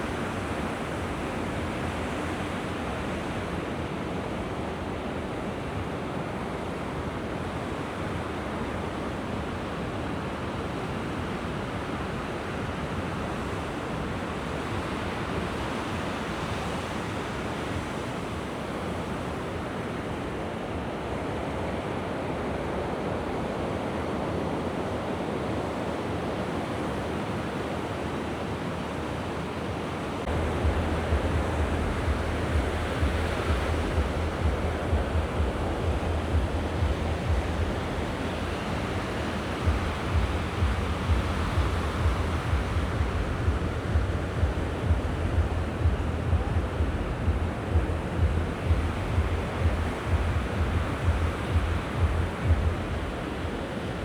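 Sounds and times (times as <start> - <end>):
sea waves washing ashore: 0.0 - 54.0.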